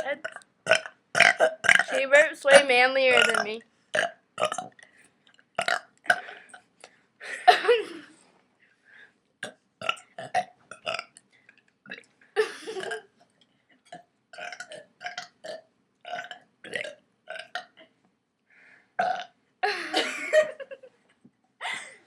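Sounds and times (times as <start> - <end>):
girl burping: 0.0 - 4.7, 7.5 - 8.1, 12.4 - 13.1, 19.0 - 20.5.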